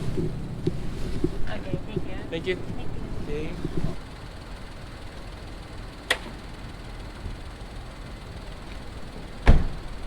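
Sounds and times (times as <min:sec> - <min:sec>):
low vehicle rumble: 0:00.0 - 0:10.0
car door shutting: 0:09.2 - 0:10.0.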